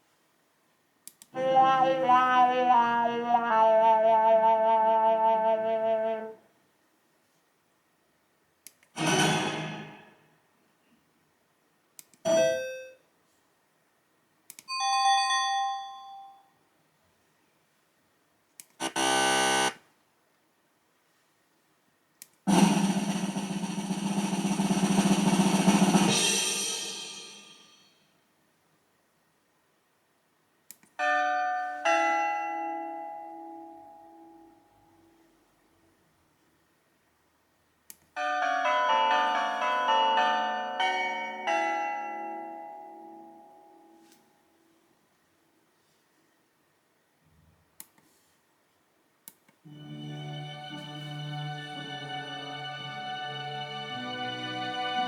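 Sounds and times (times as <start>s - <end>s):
falling tone: 1.4s - 6.4s
noisy burst: 22.5s - 27.6s
bell-like chime: 38.2s - 44.0s.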